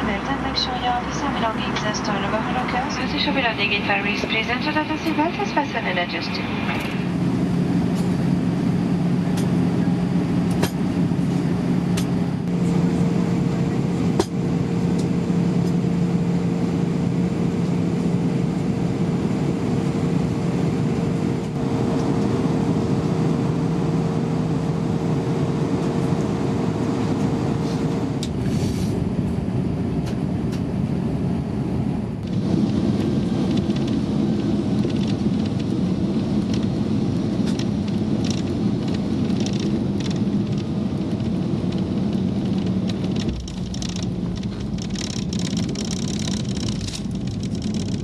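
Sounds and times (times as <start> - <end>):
airflow rush: 0.0 - 25.6
airplane engine hum: 0.0 - 48.0.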